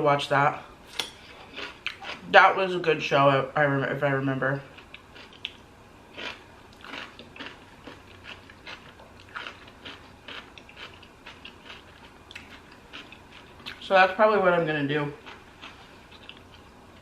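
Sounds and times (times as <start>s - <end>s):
person chewing crunchy food: 0.9s - 2.3s, 4.7s - 13.8s, 15.2s - 17.0s.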